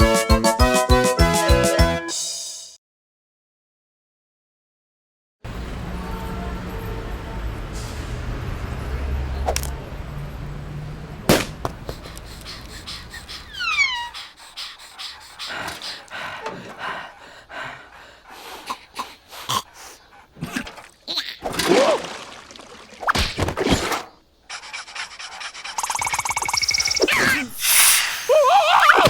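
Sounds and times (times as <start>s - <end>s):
cartoon character panting: 11.6s - 20.7s, 24.5s - 26.4s
falling whistle slides: 25.8s - 29.0s.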